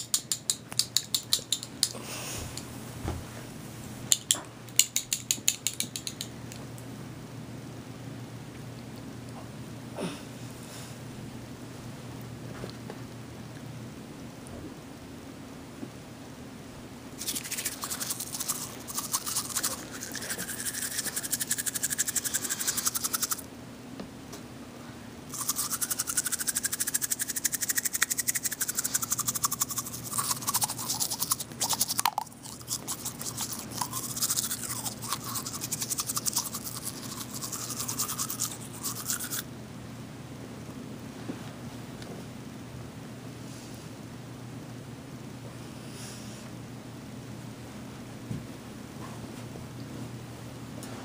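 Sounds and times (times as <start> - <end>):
scratchy brushing strokes: 17.2 - 23.4, 25.3 - 39.4.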